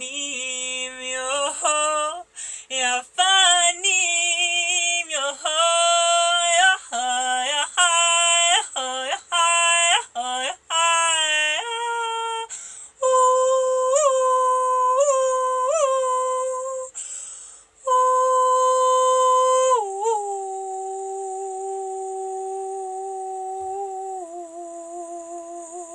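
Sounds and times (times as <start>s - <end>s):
woman singing unaccompanied: 0.0s - 17.1s, 17.8s - 25.9s
woman breathing: 2.3s - 2.7s, 12.5s - 13.0s, 16.9s - 17.8s.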